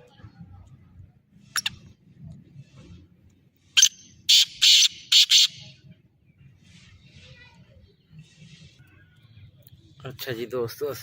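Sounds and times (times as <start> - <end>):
bird calling harsh notes: 1.6 - 1.8, 3.7 - 5.8.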